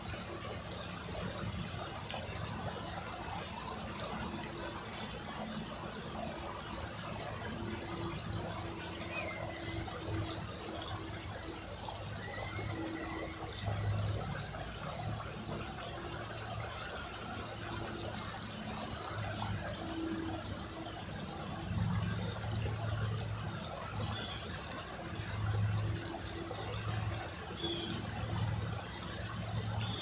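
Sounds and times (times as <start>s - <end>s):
river water flowing: 0.0s - 30.0s.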